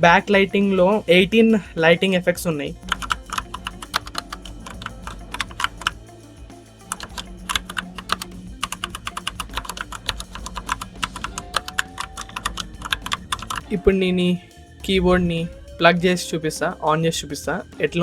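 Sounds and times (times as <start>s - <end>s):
mechanical keyboard typing: 2.8s - 6.0s, 6.9s - 13.8s.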